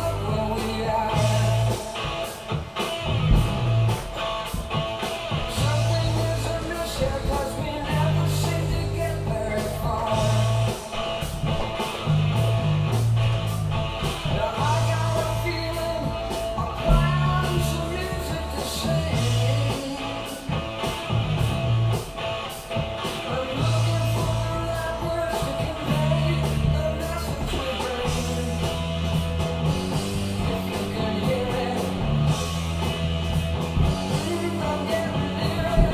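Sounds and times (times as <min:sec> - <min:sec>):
singing: 0:00.0 - 0:02.5, 0:05.4 - 0:11.3, 0:14.0 - 0:21.1, 0:23.0 - 0:28.9, 0:30.0 - 0:32.6, 0:33.9 - 0:35.9
bass line: 0:00.0 - 0:35.9
guitar: 0:00.0 - 0:35.9
steady drum beat: 0:00.0 - 0:35.9.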